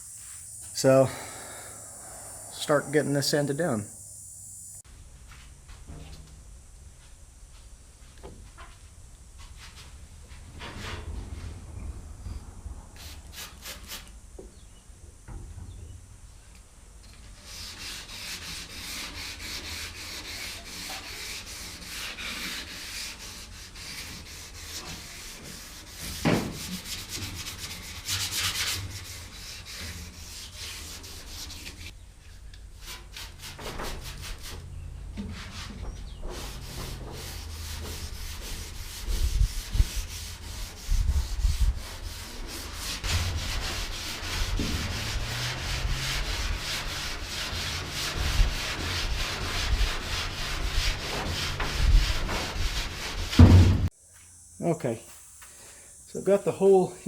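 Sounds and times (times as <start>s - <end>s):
sandpaper rubbing on metal: 17.3s - 31.9s, 35.3s - 53.5s
sharp knocks: 53.4s - 53.9s.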